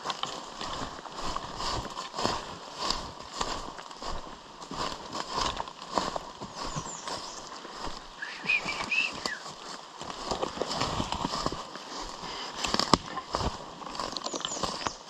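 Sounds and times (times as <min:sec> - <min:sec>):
footsteps through wet undergrowth: 0:00.0 - 0:15.0
bird call: 0:08.2 - 0:09.5.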